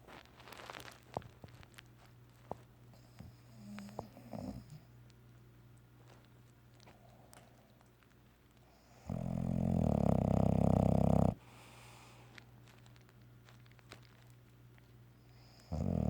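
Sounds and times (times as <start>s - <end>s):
dog snoring: 2.9s - 4.9s, 8.7s - 11.5s, 15.3s - 16.0s.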